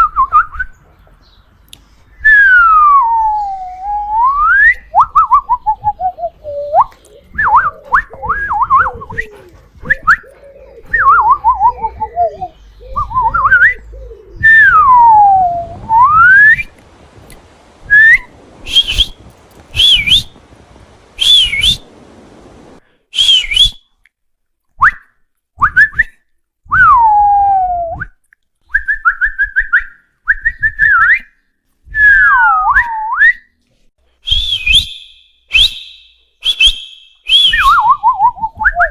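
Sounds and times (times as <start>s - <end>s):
whistles calling a dog: 6.6s - 10.3s, 14.4s - 16.7s, 17.9s - 20.4s, 21.2s - 21.8s, 23.2s - 23.9s, 28.8s - 31.3s, 32.0s - 33.5s, 34.2s - 38.9s.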